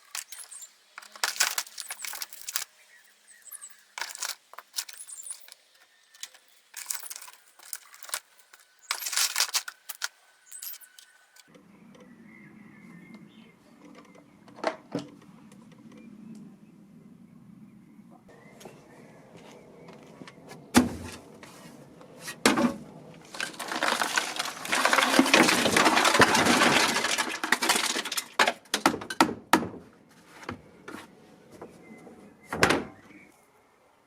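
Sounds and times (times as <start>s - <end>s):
hard parts knocking: 0.0s - 2.7s
parts clattering and rattling: 0.0s - 11.5s, 22.5s - 29.2s.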